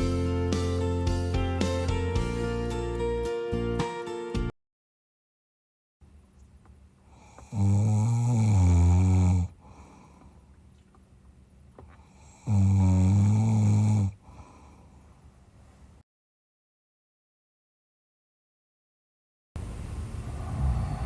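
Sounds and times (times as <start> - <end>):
man snoring: 7.1 - 10.2, 12.0 - 14.8.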